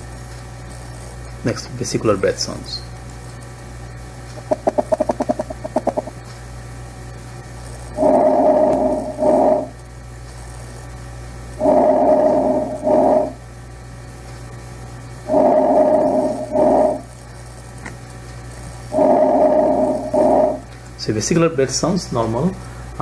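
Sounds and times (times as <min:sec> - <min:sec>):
fluttering run of pulses: 0:07.9 - 0:09.8, 0:11.6 - 0:13.4, 0:15.2 - 0:17.1, 0:18.9 - 0:20.7.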